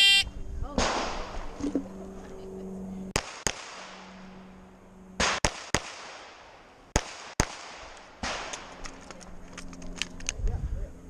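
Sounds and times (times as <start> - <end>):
pistol shots: 3.2 - 4.2, 5.2 - 8.9.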